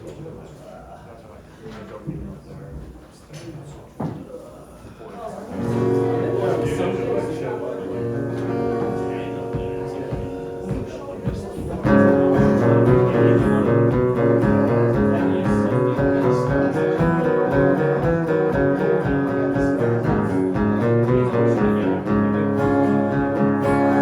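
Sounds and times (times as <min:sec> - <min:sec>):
acoustic guitar instrumental music: 0:05.5 - 0:24.0.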